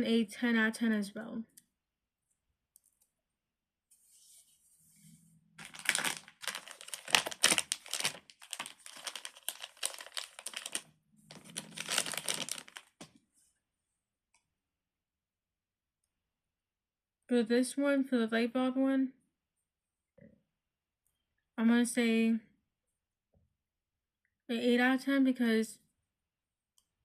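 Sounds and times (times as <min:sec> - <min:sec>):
plastic packaging crinkling: 0:05.6 - 0:13.2.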